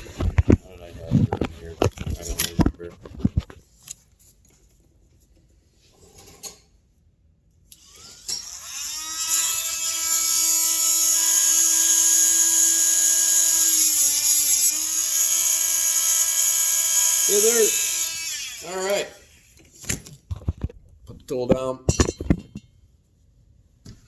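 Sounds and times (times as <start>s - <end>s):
rotary tool high whine: 7.8s - 19.5s.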